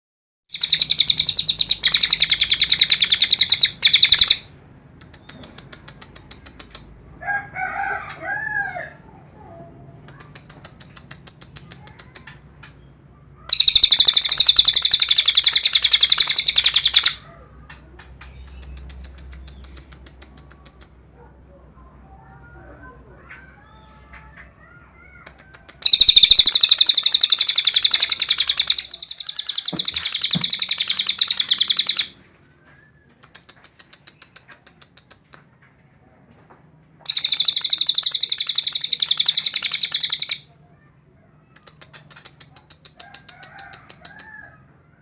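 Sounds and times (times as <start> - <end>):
songbird harsh rapid trills: 0.5 - 4.5, 13.5 - 17.2, 25.8 - 32.2, 37.1 - 40.4
bird warbling call: 0.6 - 4.5, 13.5 - 17.2, 25.8 - 32.2, 37.1 - 40.4
bird soft rapid chattering: 18.1 - 21.0, 25.3 - 32.1.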